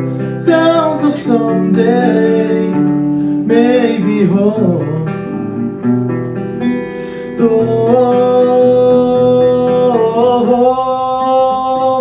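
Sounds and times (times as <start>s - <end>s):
acoustic guitar: 0.0s - 12.0s
man singing long note: 7.4s - 12.0s.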